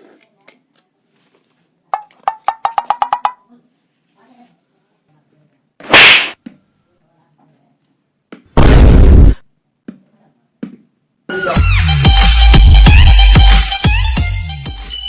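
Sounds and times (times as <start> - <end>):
cartoon hissy hit: 5.8 - 6.4
cartoon explosion burst: 5.9 - 6.4, 8.6 - 9.4
electronic music: 11.4 - 15.0.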